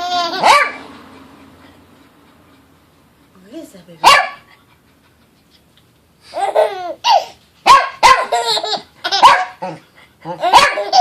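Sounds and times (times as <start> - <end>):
baby laughing squeals: 0.0 - 0.7, 6.3 - 7.4, 8.2 - 9.5, 10.4 - 11.0
dog barking: 0.4 - 0.9, 4.0 - 4.5, 7.6 - 8.4, 9.2 - 11.0.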